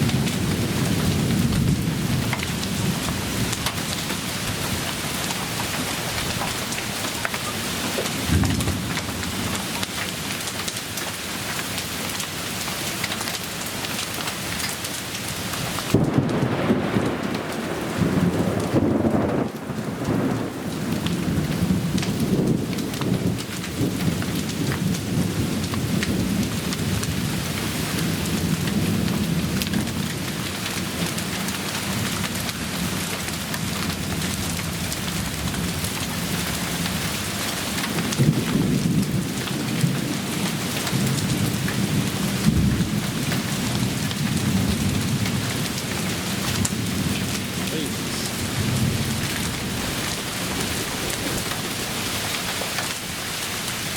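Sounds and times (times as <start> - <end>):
heavy rain downpour drumming: 0.0 - 53.9
low thunder rumble: 15.9 - 25.5, 41.0 - 53.9
sharp hail taps: 46.6 - 53.9.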